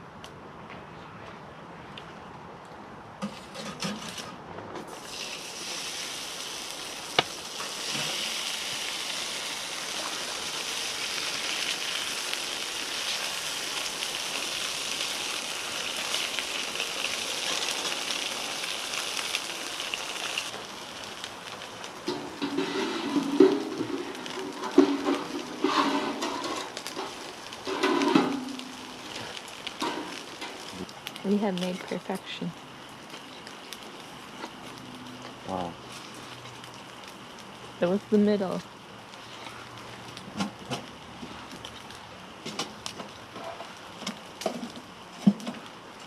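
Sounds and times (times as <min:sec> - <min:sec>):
bacon and egg sizzling: 0:05.0 - 0:45.0.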